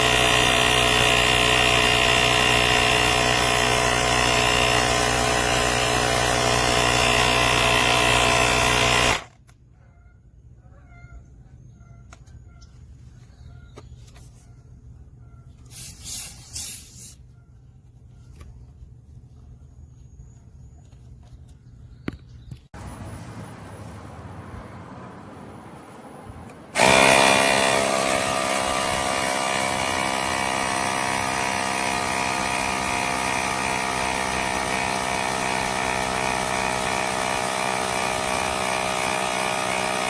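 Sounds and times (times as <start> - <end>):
tire inflator compressor buzzing: 0.0 - 9.5, 26.7 - 40.0
short hissy bursts: 15.6 - 17.2.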